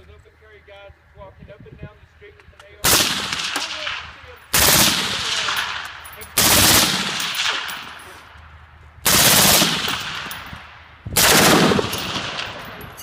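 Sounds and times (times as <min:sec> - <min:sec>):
suppressed rifle automatic bursts: 0:02.8 - 0:08.0, 0:09.0 - 0:10.5, 0:11.2 - 0:12.9.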